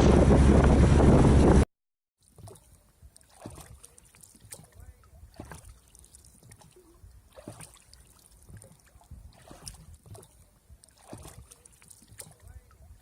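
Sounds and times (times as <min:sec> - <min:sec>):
low rumble: 0:00.0 - 0:01.7
water lapping against hull: 0:02.2 - 0:13.0.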